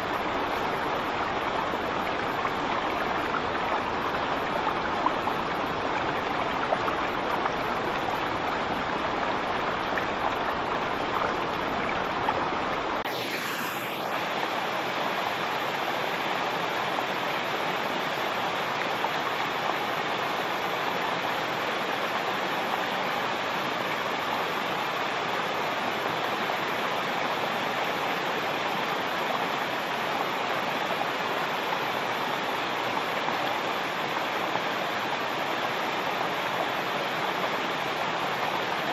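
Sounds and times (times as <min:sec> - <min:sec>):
waterfall rushing: 0:00.0 - 0:29.8.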